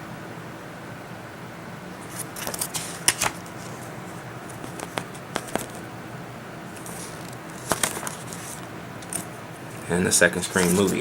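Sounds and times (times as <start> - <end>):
paper rustling: 2.0 - 5.9, 6.7 - 11.0.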